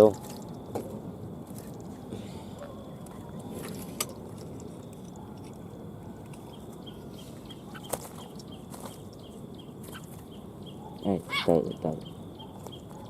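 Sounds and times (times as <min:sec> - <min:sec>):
small bird chirping: 0:04.8 - 0:13.0.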